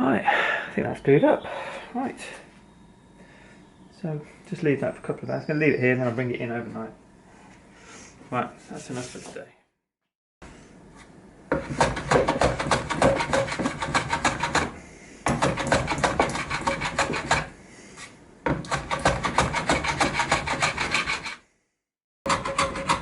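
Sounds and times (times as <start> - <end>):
hand tool rasping on wood: 11.5 - 17.5, 18.6 - 21.4.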